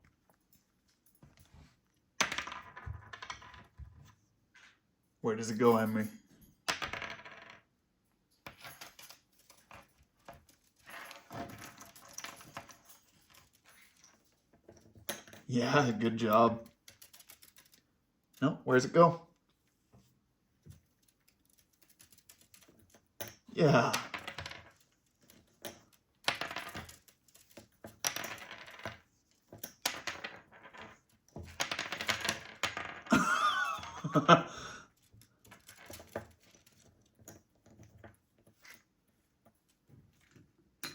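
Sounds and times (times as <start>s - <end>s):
plastic rings clinking and clattering: 8.5s - 18.4s, 35.0s - 38.8s.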